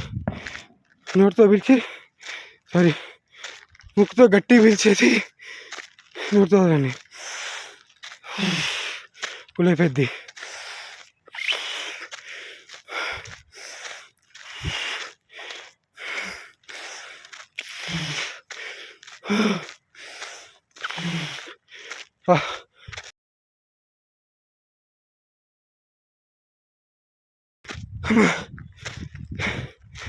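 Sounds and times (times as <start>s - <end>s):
man breathing hard: 0.0s - 0.7s, 1.7s - 3.8s, 5.1s - 23.1s, 27.7s - 30.0s.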